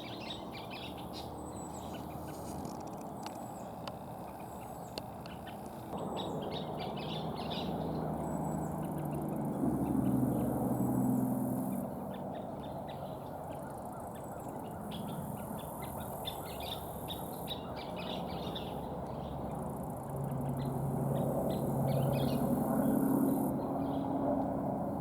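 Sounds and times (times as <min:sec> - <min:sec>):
birds chattering alarm calls: 0:00.0 - 0:19.3.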